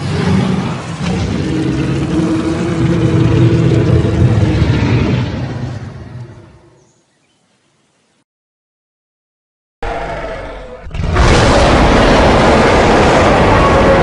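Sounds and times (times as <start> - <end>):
low rough monster roar: 0.0 - 6.7, 9.8 - 14.0.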